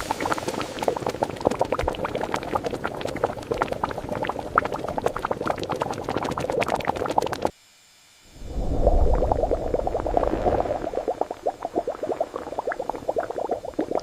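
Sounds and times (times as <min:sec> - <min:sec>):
thick mixture boiling and bubbling: 0:00.0 - 0:07.5, 0:08.5 - 0:14.0.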